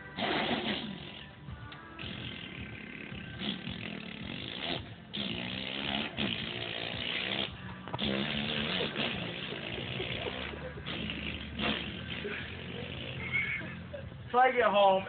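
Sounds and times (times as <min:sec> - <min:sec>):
person imitating motorbike engine: 0:02.0 - 0:14.0.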